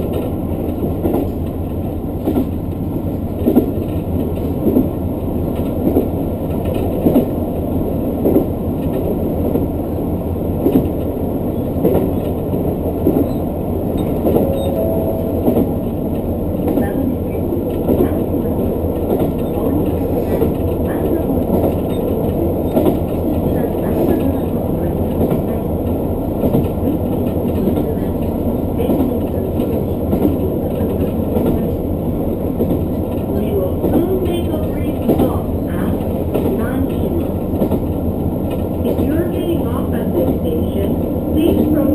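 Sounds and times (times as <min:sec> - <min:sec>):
train carriage rumble: 0:00.0 - 0:41.9
wheels clacking over rail joints: 0:10.6 - 0:14.8, 0:15.4 - 0:31.8
steady tone: 0:14.1 - 0:20.4.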